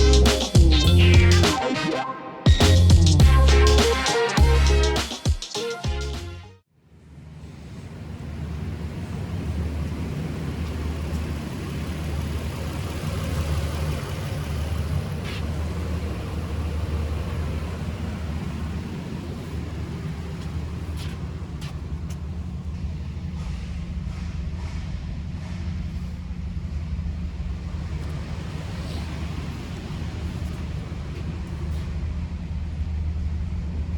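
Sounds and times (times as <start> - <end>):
pickup engine idling: 7.1 - 24.3, 25.9 - 33.6.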